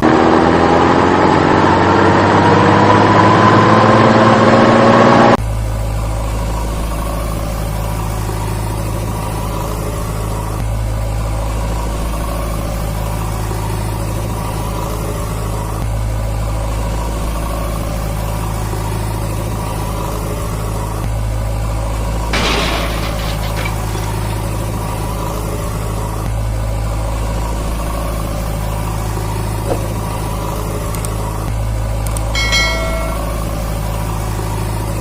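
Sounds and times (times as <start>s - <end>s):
heavy engine idling: 5.4s - 35.0s.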